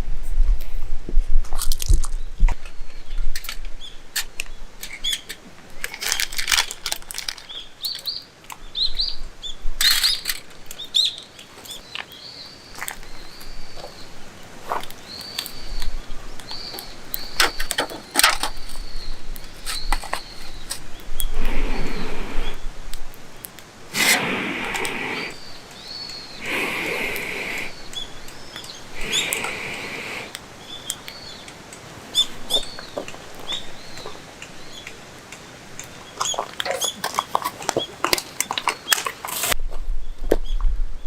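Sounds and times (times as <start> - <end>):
sharp clicks and cracks: 1.4 - 8.6, 14.8 - 21.3, 27.9 - 31.9, 32.5 - 39.6
bird chirping: 7.4 - 14.3, 15.0 - 22.7, 23.3 - 39.0.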